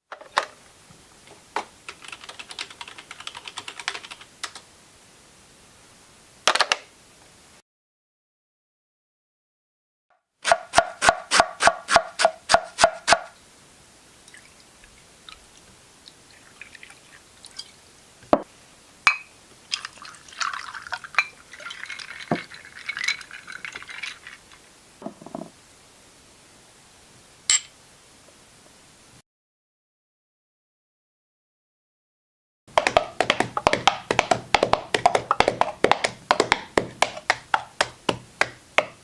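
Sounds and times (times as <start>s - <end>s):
ringing clinks: 27.5s - 27.7s
sharp taps: 32.7s - 39.0s.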